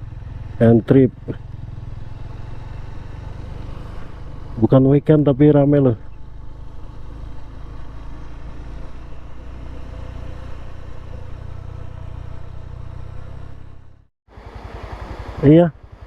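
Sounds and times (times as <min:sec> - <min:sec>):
motorcycle engine running: 0:00.0 - 0:16.0.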